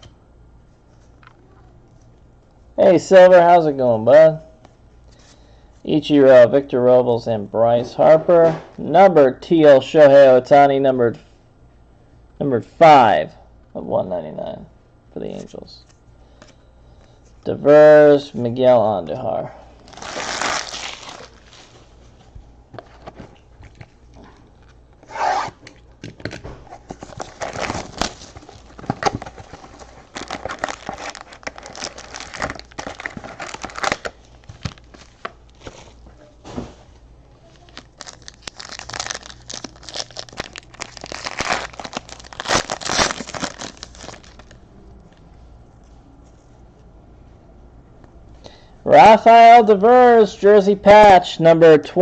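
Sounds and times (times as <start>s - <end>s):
wrappers tearing and crinkling: 19.8s - 21.9s, 26.8s - 36.0s, 37.5s - 44.6s.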